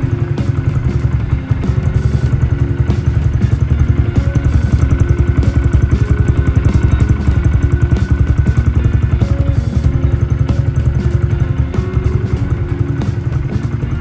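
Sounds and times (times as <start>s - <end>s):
motorcycle engine idling: 0.0s - 14.0s.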